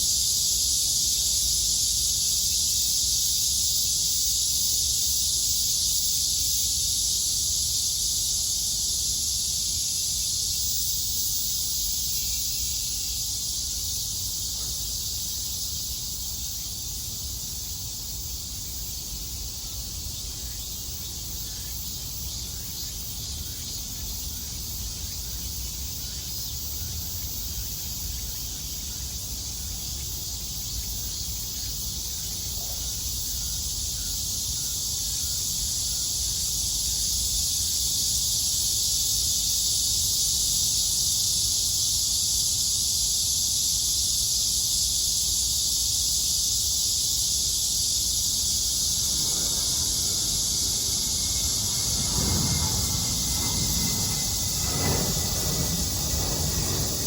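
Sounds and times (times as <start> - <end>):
cicadas buzzing: 0.0 - 57.0
low rumble: 48.7 - 57.0.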